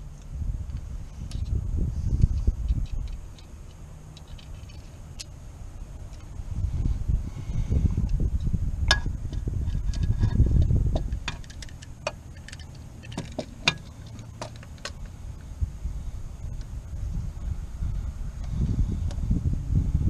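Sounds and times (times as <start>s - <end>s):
low rumble: 0.0s - 20.0s
metal tools clinking: 2.7s - 5.0s, 11.1s - 15.1s.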